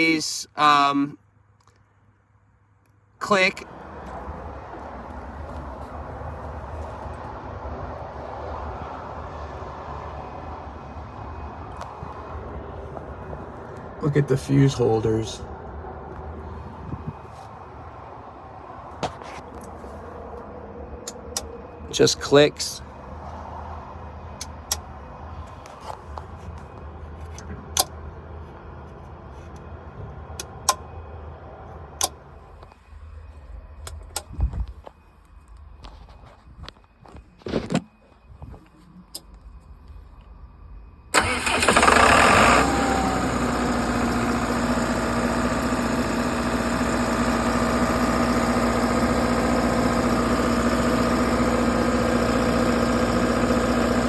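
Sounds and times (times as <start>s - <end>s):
low rumble of running machinery: 24.2s - 54.0s.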